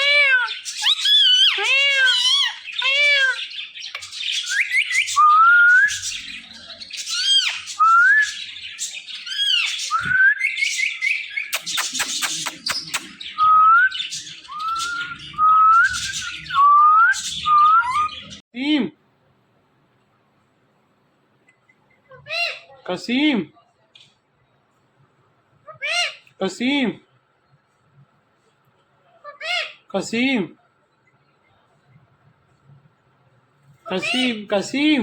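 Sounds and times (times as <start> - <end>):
parrot squawking: 0.0 - 9.9, 10.5 - 18.4, 22.1 - 22.8, 25.6 - 26.3, 29.2 - 29.9, 33.9 - 34.6
parrot chirping: 0.0 - 18.4, 33.8 - 34.6
parrot whistling: 4.5 - 6.2, 11.6 - 18.4.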